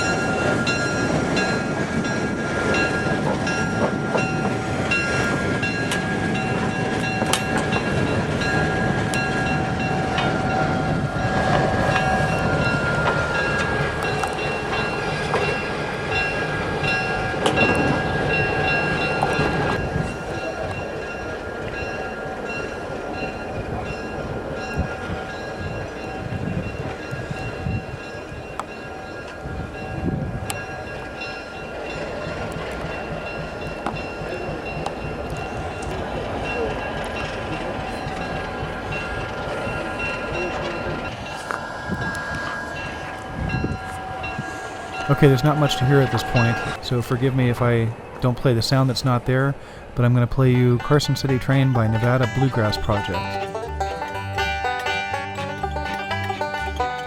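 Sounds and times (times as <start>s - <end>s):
train rumbling on track: 0.0s - 57.0s
thin high ringing tones: 37.9s - 48.1s.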